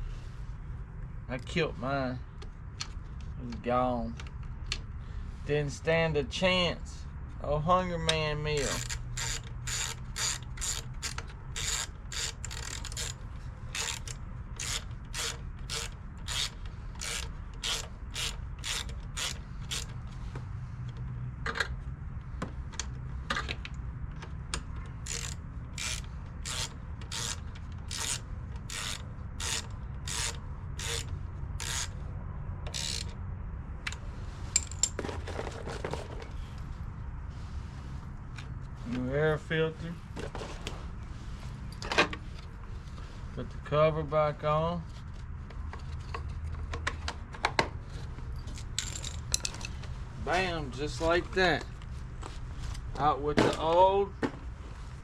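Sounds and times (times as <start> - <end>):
ratchet wrench clicking: 8.6 - 20.0, 24.6 - 32.0, 32.7 - 33.2, 48.5 - 49.8.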